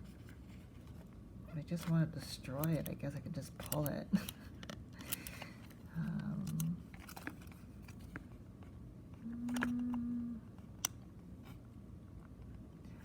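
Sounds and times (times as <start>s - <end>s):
plastic cassette shell clicking: 2.6s - 5.4s
low hum: 5.0s - 13.0s.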